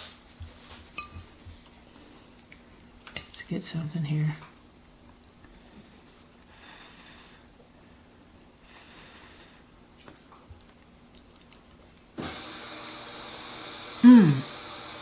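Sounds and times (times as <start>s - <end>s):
person blowing on food: 13.9s - 14.7s.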